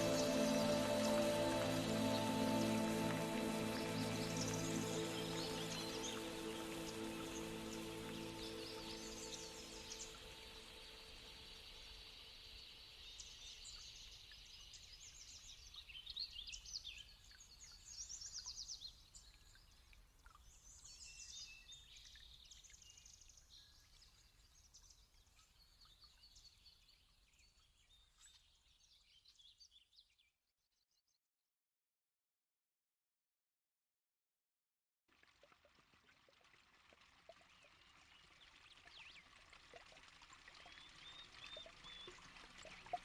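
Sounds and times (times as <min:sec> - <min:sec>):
birds chirping and trilling: 0:00.0 - 0:11.7.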